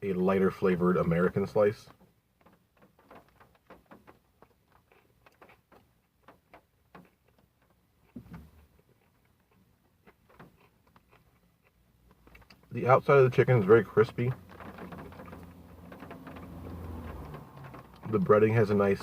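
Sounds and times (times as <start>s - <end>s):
person chewing crispy food: 3.4s - 12.8s.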